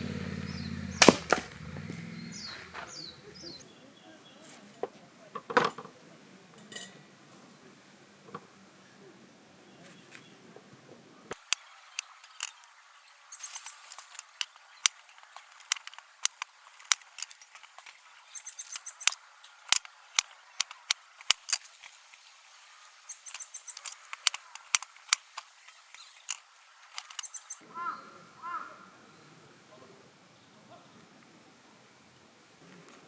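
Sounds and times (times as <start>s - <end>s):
cooking utensils clicking and tapping: 11.4s - 12.8s, 13.4s - 27.6s
high bird chirps: 11.5s - 27.6s.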